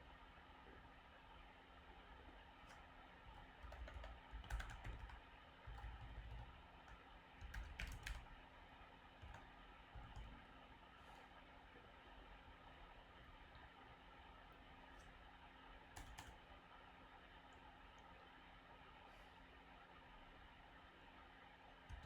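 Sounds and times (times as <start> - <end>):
keyboard typing: 2.7 - 8.4, 9.2 - 10.4, 15.9 - 16.4.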